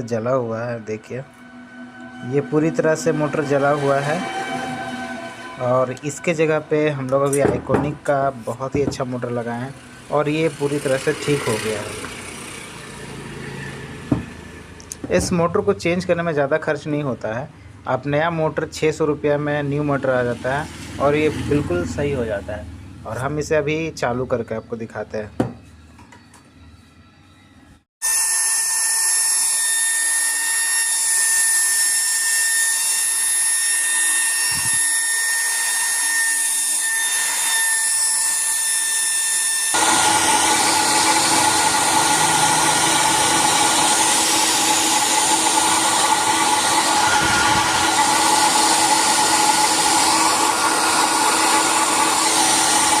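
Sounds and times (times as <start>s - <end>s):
hair dryer whining: 10.2s - 15.0s, 39.7s - 53.0s.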